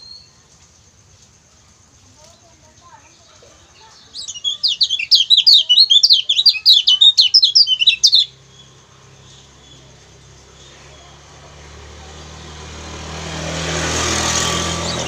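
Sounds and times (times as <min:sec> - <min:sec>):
bird singing sharp chirps: 0:00.0 - 0:00.4, 0:03.8 - 0:15.0.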